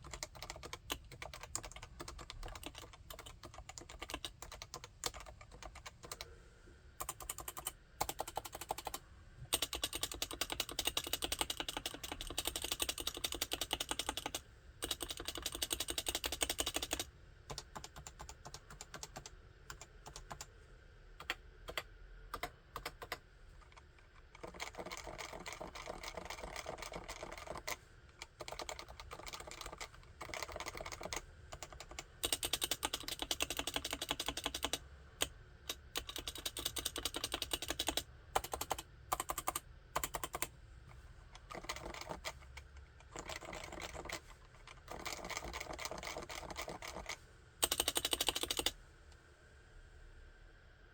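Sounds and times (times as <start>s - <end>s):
keyboard typing: 0.0s - 6.3s, 7.0s - 20.5s, 21.2s - 40.5s, 41.4s - 48.8s.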